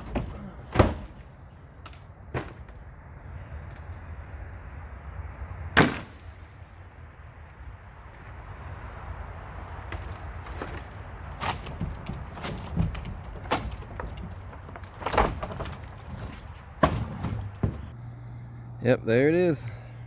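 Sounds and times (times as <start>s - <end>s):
sharp knocks and bangs: 9.9s - 17.9s.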